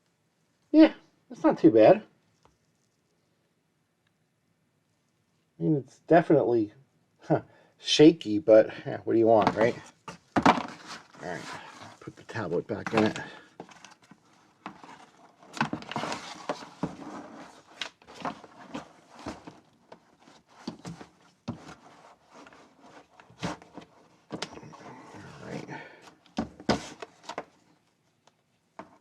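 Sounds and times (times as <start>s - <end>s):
handling rustle: 9.3s - 29.0s.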